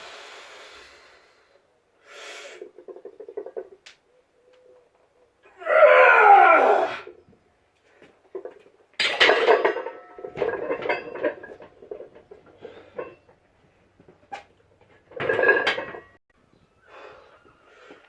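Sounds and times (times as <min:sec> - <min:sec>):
metal clanking and rattling: 0:08.3 - 0:13.4, 0:14.0 - 0:16.2.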